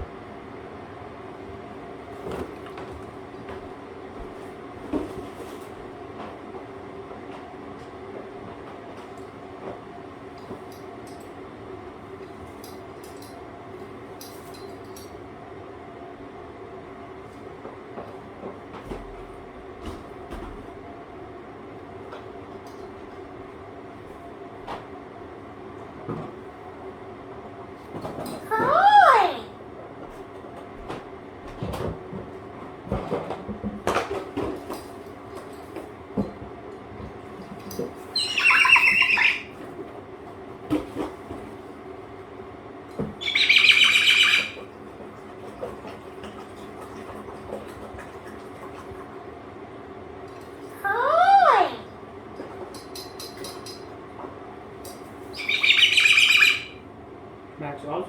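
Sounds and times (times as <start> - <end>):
cockatoo screeching: 38.1 - 39.6, 43.2 - 44.6, 55.4 - 56.8.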